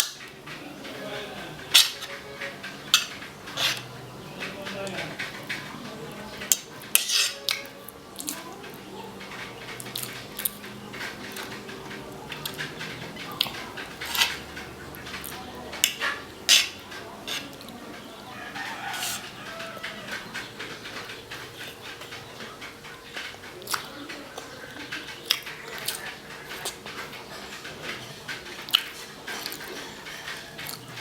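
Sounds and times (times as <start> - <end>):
cutlery clinking on a plate: 0.0 - 31.0
mouth sounds of eating: 17.2 - 31.0.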